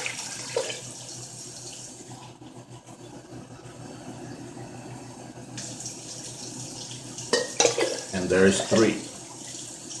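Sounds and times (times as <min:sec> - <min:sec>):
tap water running: 0:00.0 - 0:02.5, 0:05.4 - 0:10.0
low steady hum: 0:00.0 - 0:10.0.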